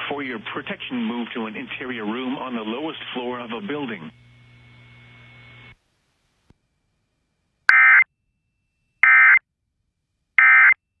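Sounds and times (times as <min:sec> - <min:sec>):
faint radio hiss: 0:00.0 - 0:08.0.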